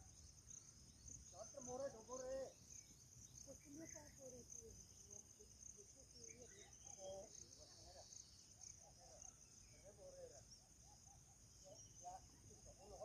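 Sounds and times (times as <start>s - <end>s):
insects trilling: 0.0s - 13.0s.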